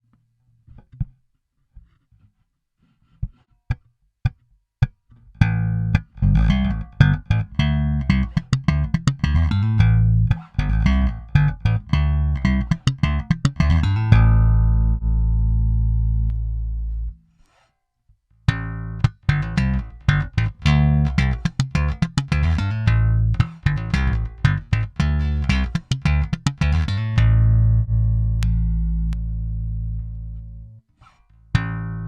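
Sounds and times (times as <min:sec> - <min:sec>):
electric bass muted notes: 0:05.4 - 0:17.2, 0:18.5 - 0:30.9, 0:31.5 - 0:32.0
electric bass riff: 0:05.4 - 0:17.4, 0:18.5 - 0:32.0.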